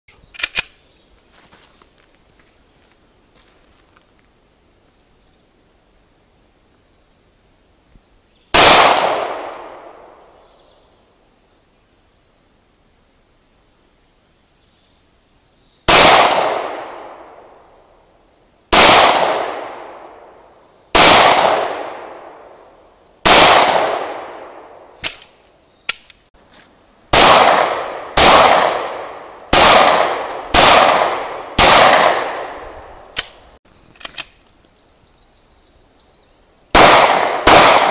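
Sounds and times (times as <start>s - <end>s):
pistol shots echoing: 8.6s - 10.1s, 15.9s - 17.5s, 18.7s - 20.1s, 20.9s - 22.5s, 23.2s - 25.2s, 27.1s - 32.6s, 36.8s - 37.9s.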